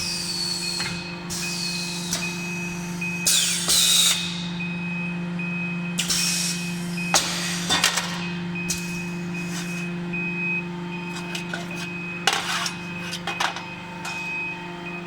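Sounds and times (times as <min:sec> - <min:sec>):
machine humming: 0:00.0 - 0:15.0
sharp metallic clanks: 0:11.1 - 0:14.4.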